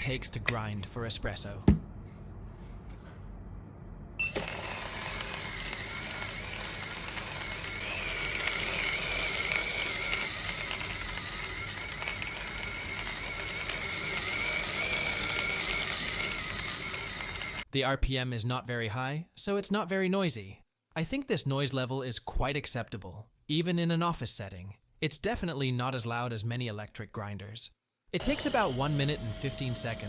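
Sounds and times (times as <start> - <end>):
grinder motor whine: 4.2 - 17.6, 28.2 - 30.0.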